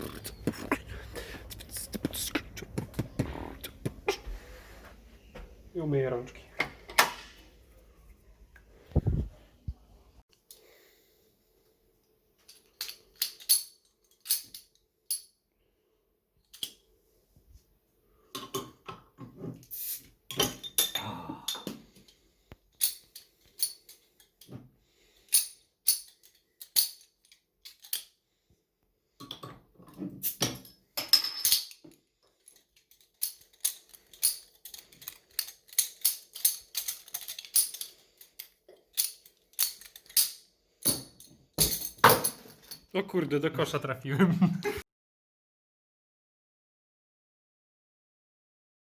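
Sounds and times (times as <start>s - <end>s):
metallic clicks and jingles: 30.2s - 42.9s.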